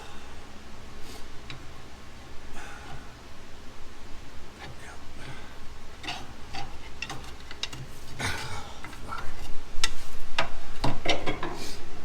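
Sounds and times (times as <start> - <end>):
hand tools clicking on metal: 6.0 - 10.5.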